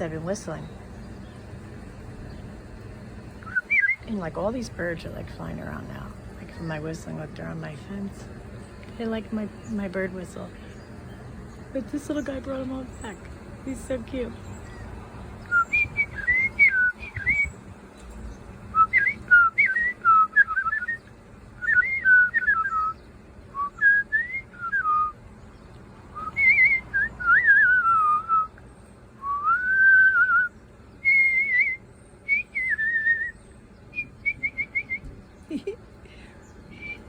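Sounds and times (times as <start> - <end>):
person whistling birdsong: 3.4 - 4.1, 15.4 - 17.6, 18.7 - 25.2, 26.1 - 28.6, 29.2 - 35.4, 36.4 - 37.0.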